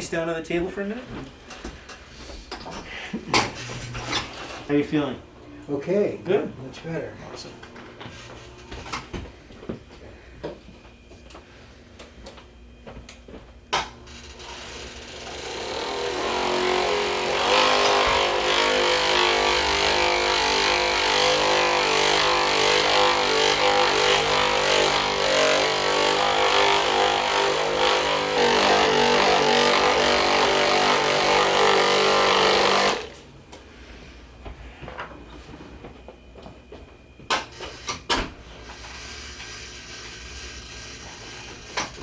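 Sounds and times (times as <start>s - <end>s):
massage tool motor running: 14.1s - 33.2s, 38.6s - 42.0s.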